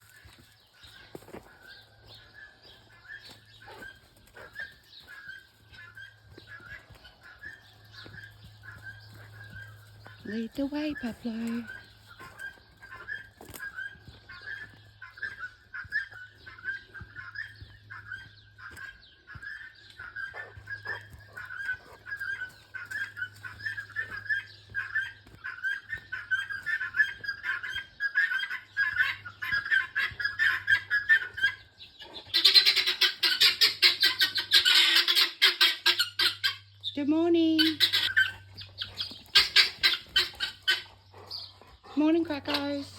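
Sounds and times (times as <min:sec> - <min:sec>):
poultry calling: 0:00.0 - 0:42.9
rapid squawking: 0:32.3 - 0:36.6, 0:37.6 - 0:40.9.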